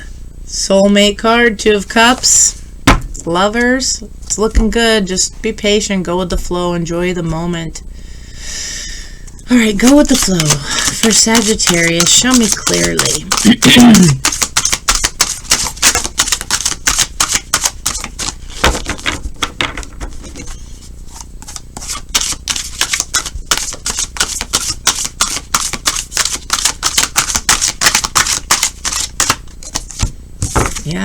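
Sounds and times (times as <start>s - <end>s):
cards being shuffled: 9.7s - 31.0s.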